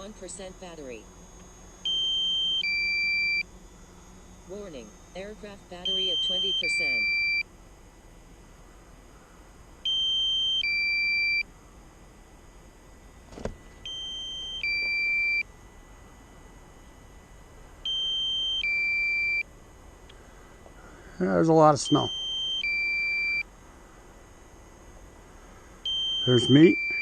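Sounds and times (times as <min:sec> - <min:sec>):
two-note electronic alarm beep: 0:01.8 - 0:03.5, 0:05.7 - 0:07.5, 0:09.9 - 0:11.5, 0:13.9 - 0:15.5, 0:17.9 - 0:19.4, 0:21.8 - 0:23.5, 0:25.9 - 0:27.0.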